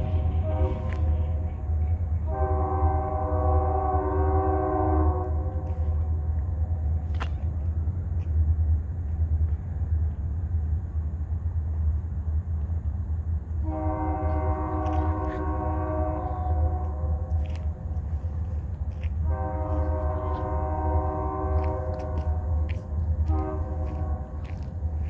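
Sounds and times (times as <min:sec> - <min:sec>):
locomotive air horn: 0:00.0 - 0:06.4, 0:13.6 - 0:25.0
train rumbling past: 0:00.0 - 0:25.0.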